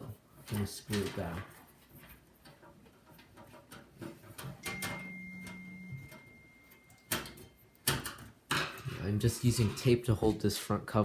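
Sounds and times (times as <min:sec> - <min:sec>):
faint steady high tone: 0:04.6 - 0:07.9.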